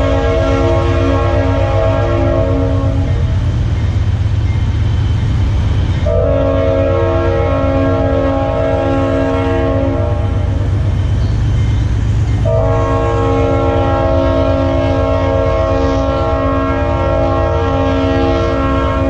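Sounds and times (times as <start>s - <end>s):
train horn blast: 0.0s - 3.5s, 6.0s - 10.8s, 12.4s - 19.0s
train rumbling: 0.0s - 19.0s.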